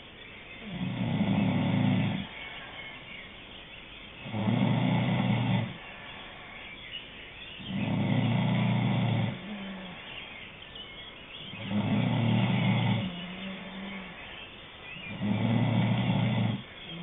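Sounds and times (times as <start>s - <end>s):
rough snoring: 0.6s - 2.5s, 4.2s - 6.0s, 7.6s - 10.2s, 11.5s - 14.3s, 15.1s - 17.0s.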